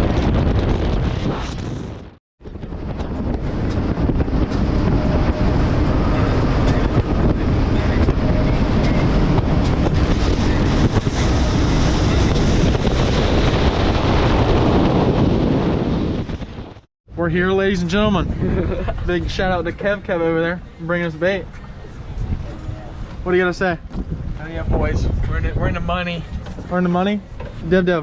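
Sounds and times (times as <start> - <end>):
wind buffeting microphone: 0.0 - 28.0
boat motor humming: 2.4 - 14.4.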